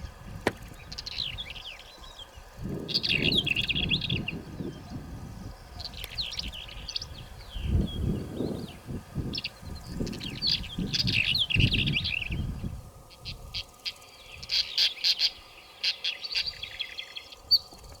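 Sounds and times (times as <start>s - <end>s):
small birds chirping: 0.0s - 18.0s.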